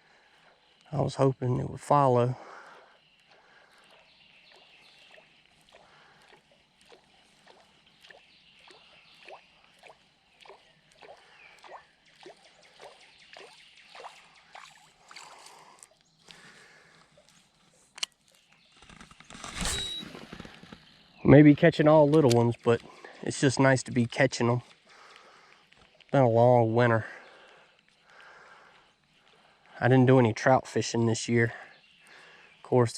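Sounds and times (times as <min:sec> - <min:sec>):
lure splashing on water: 0:02.4 - 0:16.4
sharp click: 0:18.8 - 0:20.8.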